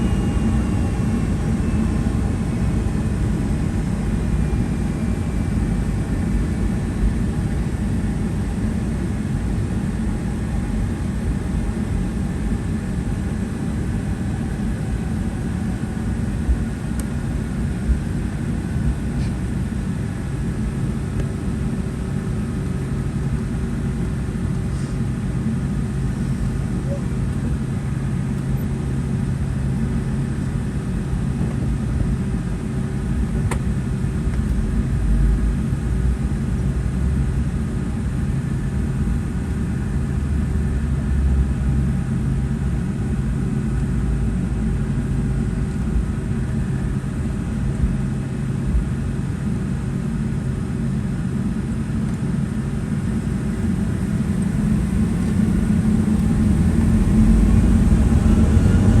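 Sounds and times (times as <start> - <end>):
faint steady hum: 0.0 - 32.5, 39.8 - 59.0
jet cabin rumble: 0.0 - 32.6, 50.5 - 59.0.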